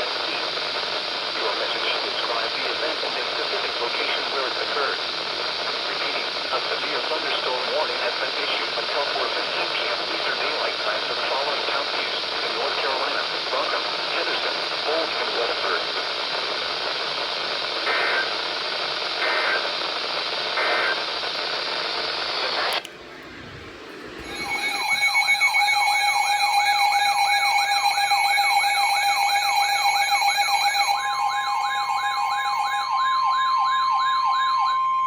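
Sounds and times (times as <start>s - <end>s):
radio hiss: 0.0s - 32.8s
data tone blips: 24.2s - 35.0s
warbling electronic alert tone: 24.2s - 35.0s.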